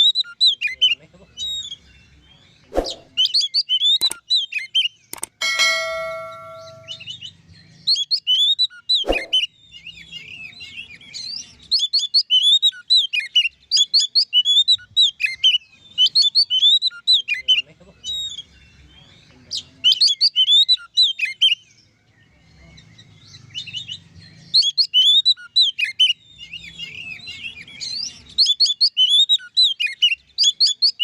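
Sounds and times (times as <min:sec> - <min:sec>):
bird singing whistled notes: 0:01.4 - 0:31.0
sharp clicks: 0:04.0 - 0:04.2, 0:05.1 - 0:05.4
ringing metallic tone: 0:05.4 - 0:07.0.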